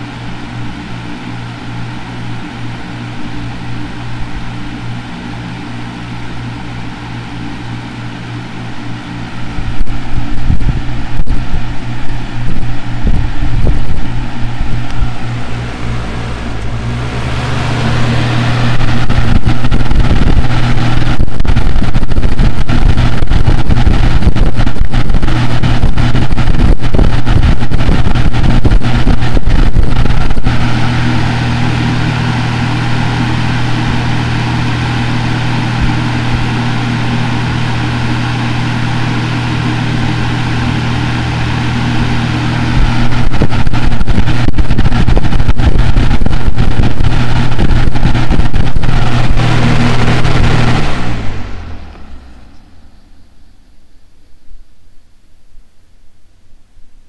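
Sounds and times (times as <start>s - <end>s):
rushing air from fan: 0.0s - 53.3s
box fan motor hum: 0.0s - 56.4s
wind buffeting microphone: 9.4s - 51.5s.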